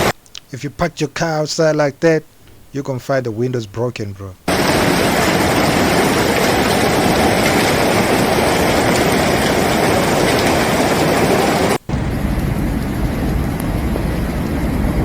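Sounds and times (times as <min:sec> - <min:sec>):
rain downpour: 0:04.4 - 0:15.0
hail pelting hard surfaces: 0:04.5 - 0:15.0
low rumble: 0:04.5 - 0:15.0.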